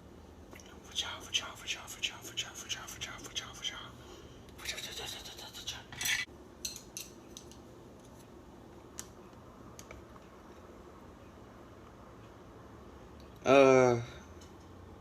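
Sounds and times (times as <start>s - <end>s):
kitchen utensils and dishes clinking: 6.0s - 7.6s.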